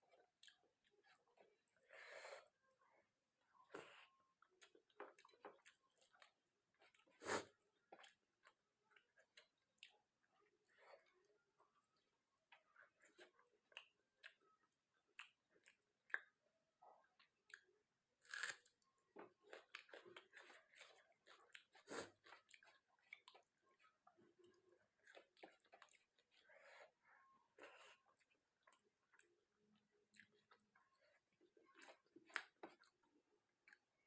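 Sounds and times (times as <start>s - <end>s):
chewing crunches: 18.2s - 23.5s.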